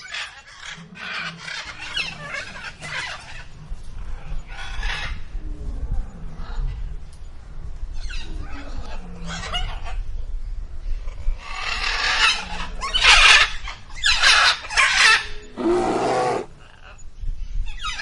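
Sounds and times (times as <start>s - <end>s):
harsh animal calls: 14.3s - 16.9s.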